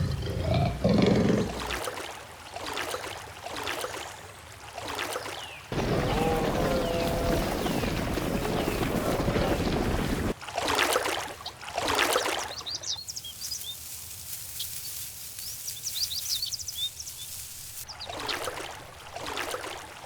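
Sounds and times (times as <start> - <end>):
water churning and splashing: 0.0 - 12.8, 17.7 - 20.0
small birds chirping: 5.2 - 10.3, 12.2 - 18.4.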